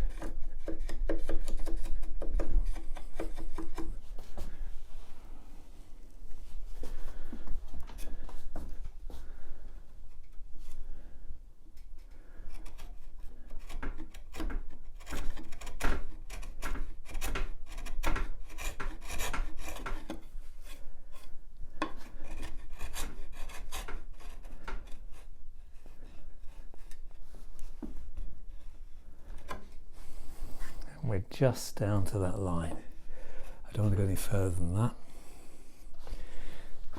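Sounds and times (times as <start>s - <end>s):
chisel shaving wood: 0.0s - 4.0s, 12.0s - 27.0s.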